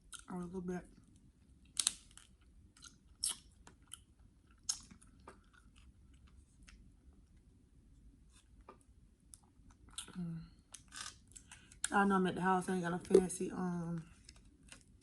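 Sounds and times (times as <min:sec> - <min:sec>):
chewing and wet mouth sounds: 0:01.0 - 0:07.4, 0:09.3 - 0:12.0.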